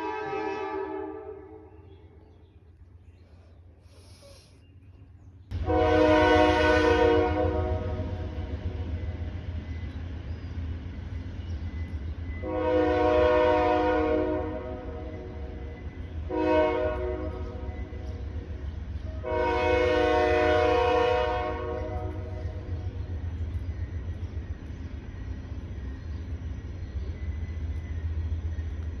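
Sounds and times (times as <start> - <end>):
train air horn blasts: 0.0 - 1.7, 5.6 - 8.2, 12.4 - 15.2, 16.3 - 17.7, 19.2 - 22.4.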